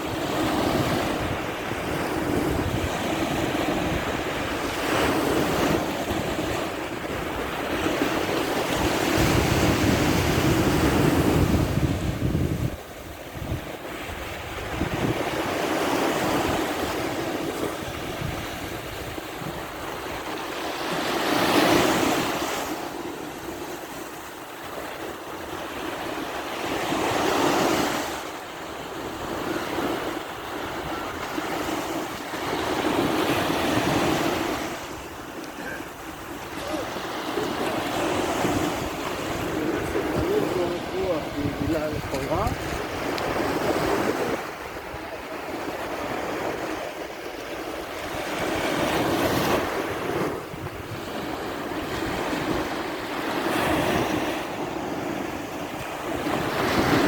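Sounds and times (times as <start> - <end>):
sea surf washing onto shore: 0.0 - 57.0
wind on microphone: 0.0 - 57.0.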